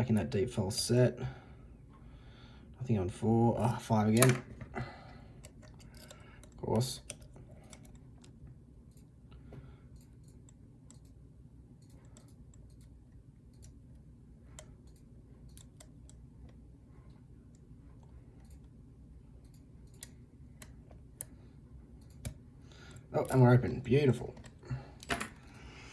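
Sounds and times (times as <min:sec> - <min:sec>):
lock pick clicking in lock: 0:05.4 - 0:08.4, 0:22.0 - 0:23.4, 0:24.4 - 0:25.6.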